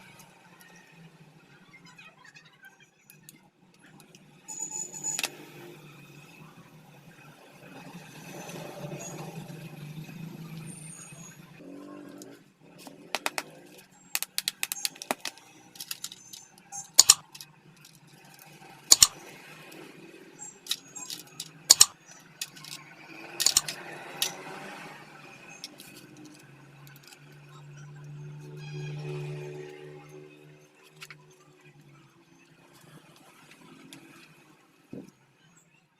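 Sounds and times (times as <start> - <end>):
tools clicking and knocking: 12.8 - 13.6, 14.2 - 24.5.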